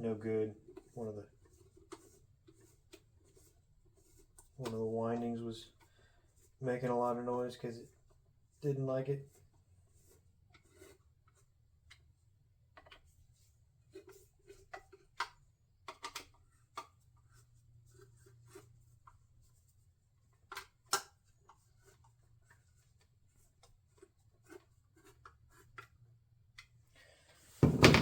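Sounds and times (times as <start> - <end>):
sharp knocks: 27.6 - 28.0.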